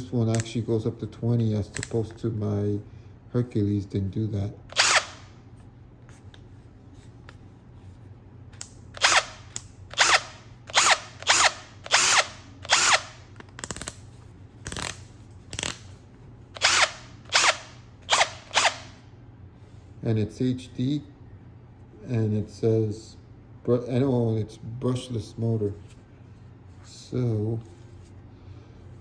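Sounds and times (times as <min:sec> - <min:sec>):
cordless drill motor spinning up: 0:04.7 - 0:05.3, 0:09.0 - 0:13.2, 0:16.6 - 0:19.0.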